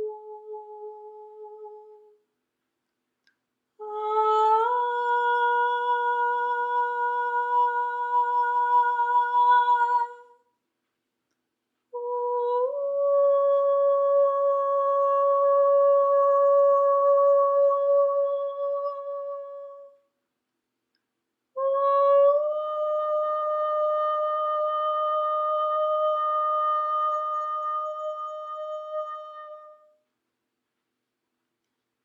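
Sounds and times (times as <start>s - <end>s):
person humming long notes: 12.0s - 20.0s, 21.6s - 29.8s.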